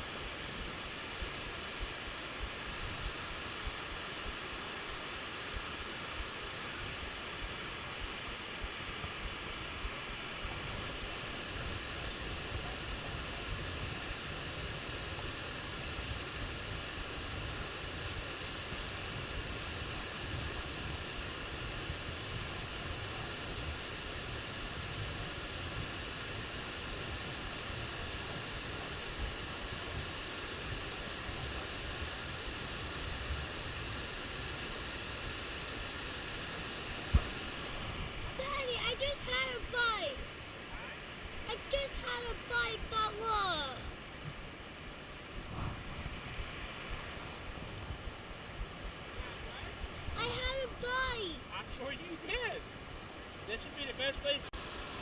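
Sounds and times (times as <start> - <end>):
steady rushing noise: 0.0 - 55.0
wind blowing across microphone: 0.0 - 55.0
wind buffeting microphone: 45.2 - 51.3.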